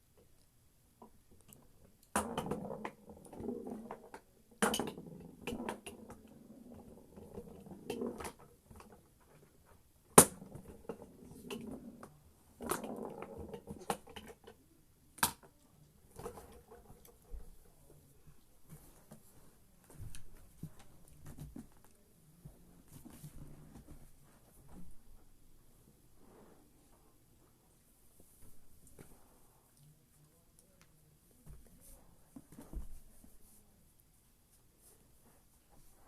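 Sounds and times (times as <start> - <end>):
ball rattling around table: 2.1 - 9.4.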